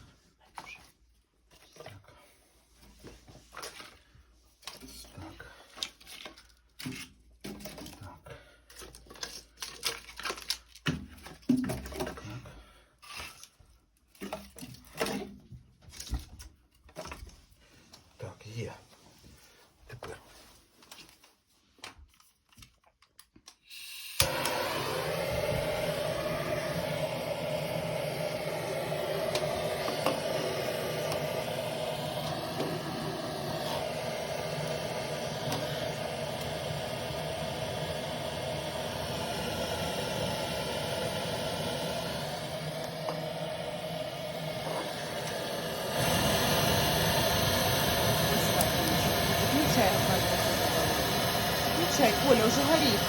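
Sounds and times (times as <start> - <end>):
gas torch burner hissing: 23.7 - 53.0.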